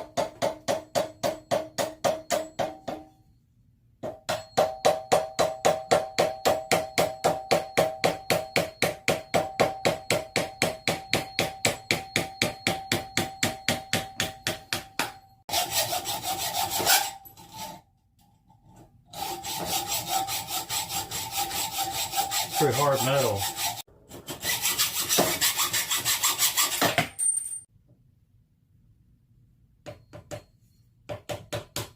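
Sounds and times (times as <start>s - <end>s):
hand tool sawing metal: 15.5s - 17.8s, 19.1s - 27.0s
metal scraping: 18.7s - 26.9s.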